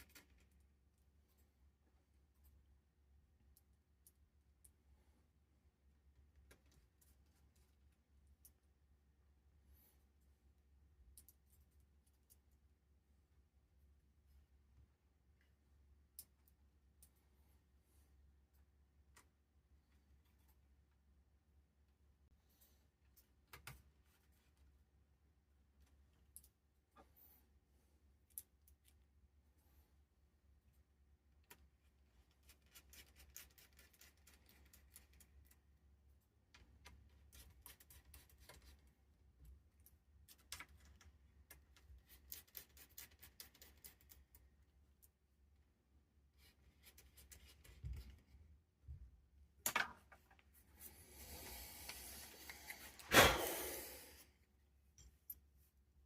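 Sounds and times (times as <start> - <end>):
hiss: 51.0 - 54.3
sharp loud click: 53.0 - 53.8.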